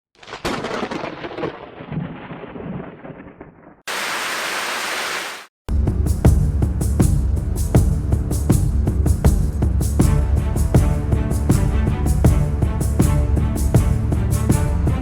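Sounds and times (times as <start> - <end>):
thunderclap rumbling: 0.4 - 4.1
static hiss: 3.9 - 5.5
music with steady beat: 5.7 - 15.0.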